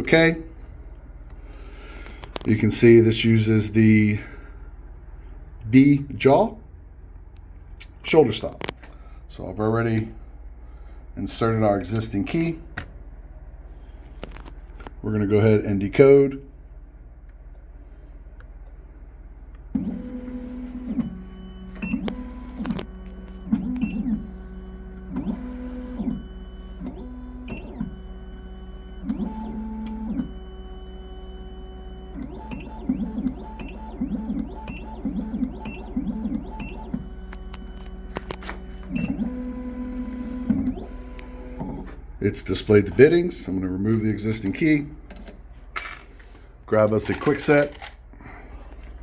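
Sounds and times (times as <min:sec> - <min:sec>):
steady low hum: 0:00.0 - 0:33.5
machine motors whining: 0:19.7 - 0:43.0.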